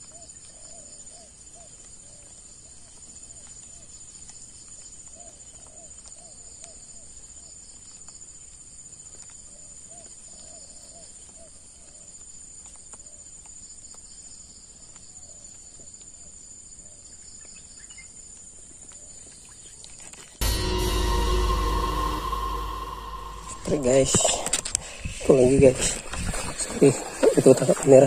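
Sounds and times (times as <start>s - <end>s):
high-pitched insect drone: 20.4s - 25.0s.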